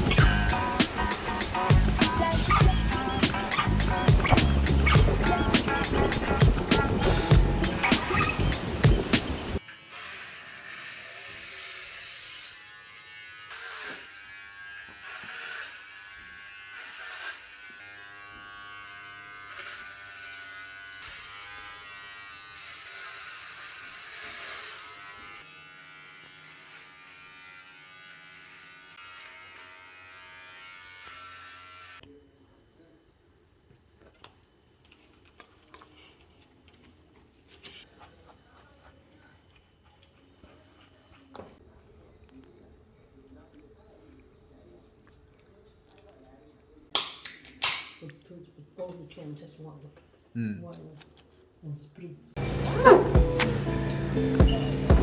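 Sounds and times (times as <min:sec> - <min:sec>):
buzzy sustained background music: 0:52.4 - 0:55.0.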